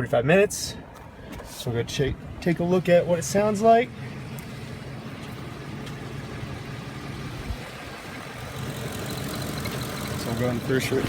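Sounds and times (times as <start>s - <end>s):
engine idling roughly: 5.4s - 11.0s.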